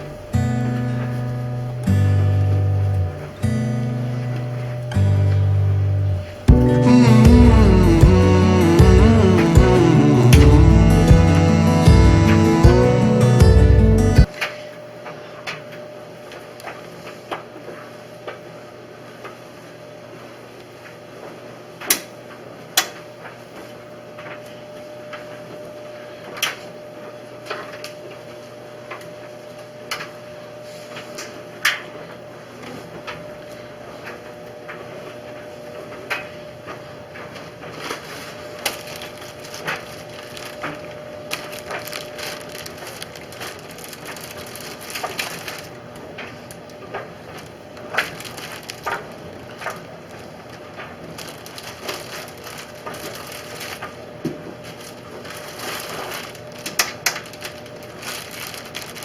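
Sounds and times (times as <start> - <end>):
steady hum: 0.0 - 14.3
held tone: 6.5 - 14.3.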